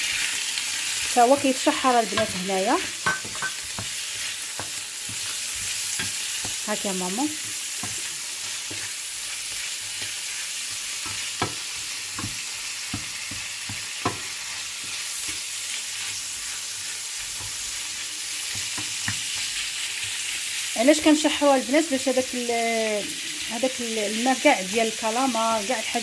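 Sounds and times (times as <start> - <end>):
squid sizzling in a frying pan: 0.0 - 26.0.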